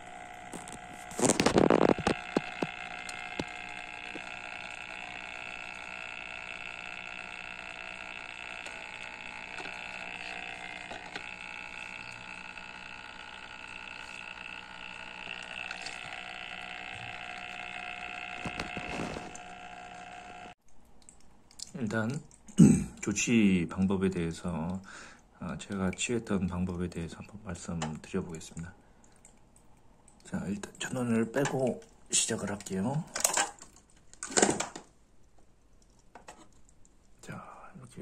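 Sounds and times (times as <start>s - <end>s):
aquarium filter whine: 0.0s - 20.6s.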